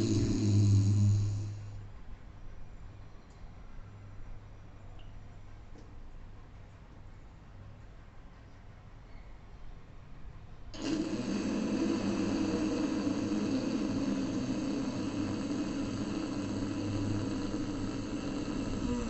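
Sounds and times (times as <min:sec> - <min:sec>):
raspy throat breathing: 0:00.0 - 0:01.8, 0:10.8 - 0:19.0.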